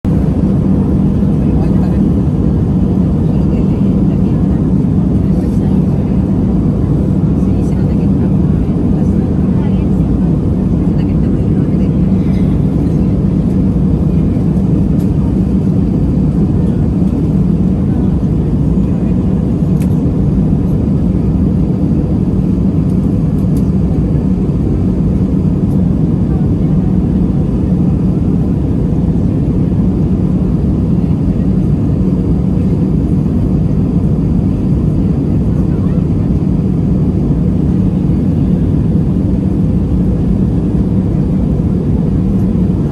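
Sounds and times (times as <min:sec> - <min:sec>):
airplane cabin engine drone: 0:00.0 - 0:42.9.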